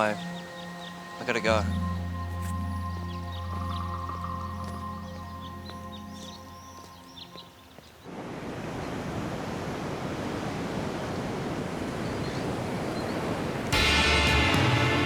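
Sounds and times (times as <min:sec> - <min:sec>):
ocean surf washing in: 0:08.1 - 0:13.8
loud music: 0:13.8 - 0:15.0.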